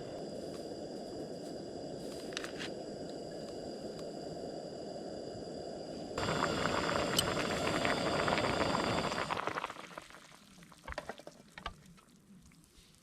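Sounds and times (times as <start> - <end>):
food bubbling and sizzling in pot: 0.0 - 13.0.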